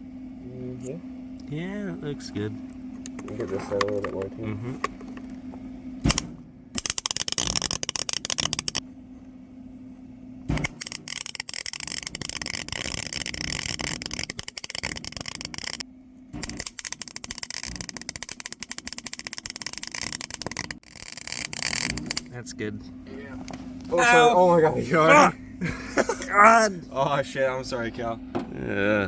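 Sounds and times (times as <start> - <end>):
low steady hum: 0.0 - 29.0
arc welder crackling: 6.0 - 8.8, 10.5 - 15.8, 16.4 - 22.4.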